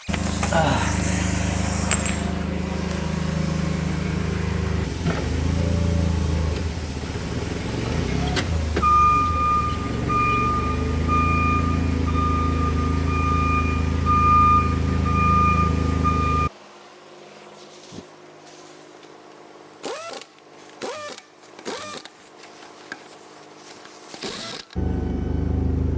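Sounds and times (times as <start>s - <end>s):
forklift engine running: 0.0s - 16.5s, 24.8s - 25.9s.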